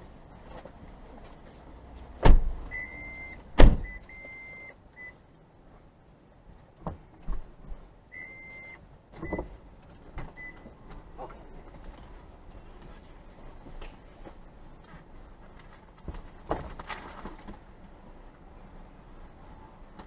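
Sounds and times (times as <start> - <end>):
car door thumps: 2.2 - 2.8, 3.6 - 4.0
car warning chime beeping: 2.7 - 5.2, 8.1 - 9.4, 10.3 - 10.7.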